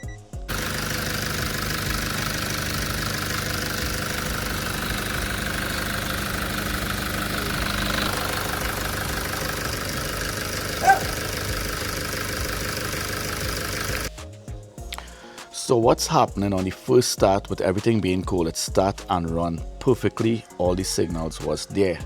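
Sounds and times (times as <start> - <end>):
diesel engine idling: 0.5 - 14.1.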